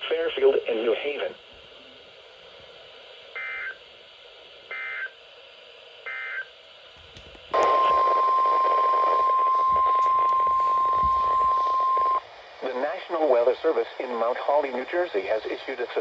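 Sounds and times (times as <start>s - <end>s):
radio hiss: 0.0s - 4.8s, 7.5s - 16.0s
steady alarm tone: 7.5s - 12.2s.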